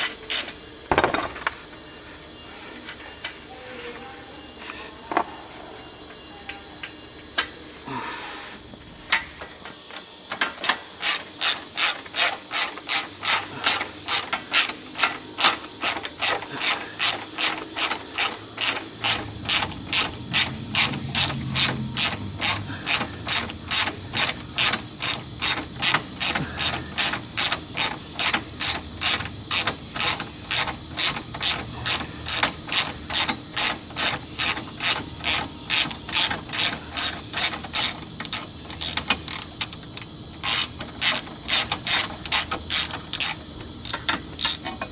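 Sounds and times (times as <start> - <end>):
ratchet wrench clicking: 0.0 - 0.6, 10.4 - 44.9.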